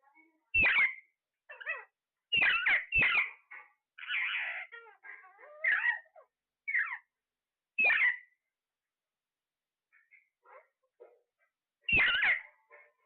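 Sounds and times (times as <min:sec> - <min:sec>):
parrot squawking and chirping: 0:00.5 - 0:07.1, 0:07.8 - 0:08.4, 0:09.9 - 0:12.9.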